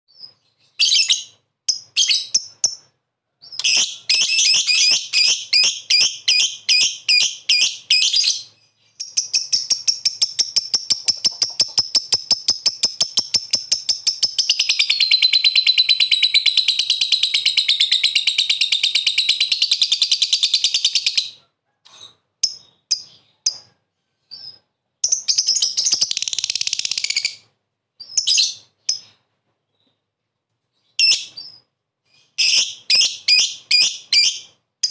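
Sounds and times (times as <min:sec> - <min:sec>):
lovebird chattering trill: 0:09.0 - 0:21.3.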